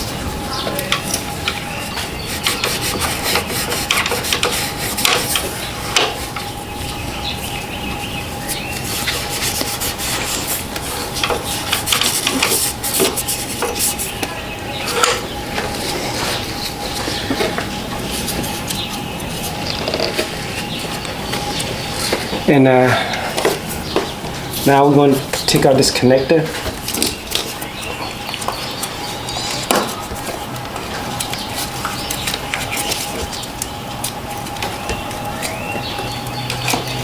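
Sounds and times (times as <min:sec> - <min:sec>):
hand scrubbing metal part: 0:02.3 - 0:06.2.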